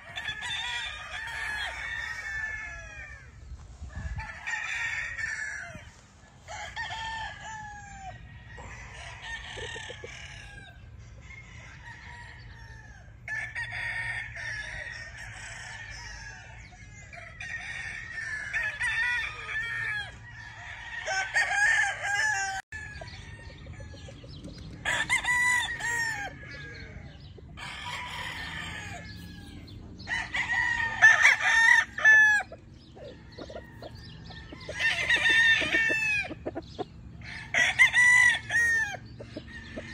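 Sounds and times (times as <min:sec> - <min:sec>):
roosters crowing: 0:00.0 - 0:39.9
chickens clucking: 0:22.8 - 0:39.9.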